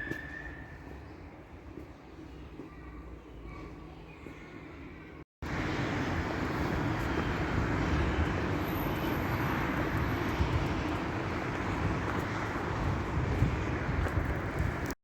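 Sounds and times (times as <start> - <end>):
moving vehicle rumble: 3.5 - 15.0.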